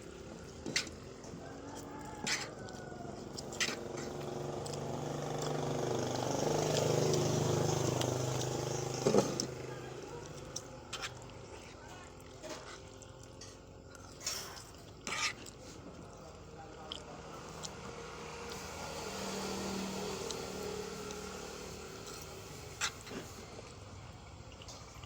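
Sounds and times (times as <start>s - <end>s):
eating noises: 0.0s - 25.0s
vehicle passing: 1.4s - 10.6s, 16.6s - 24.2s.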